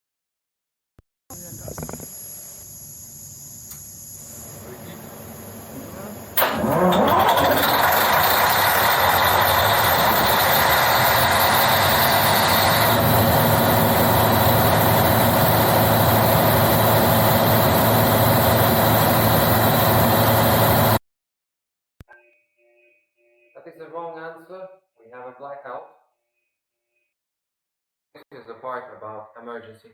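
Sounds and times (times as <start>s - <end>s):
diesel generator engine running: 4.5s - 21.0s.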